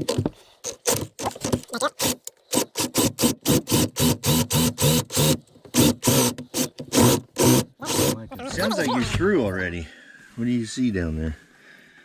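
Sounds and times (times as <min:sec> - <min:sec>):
drill hole saw cutting wood: 0:00.7 - 0:08.9.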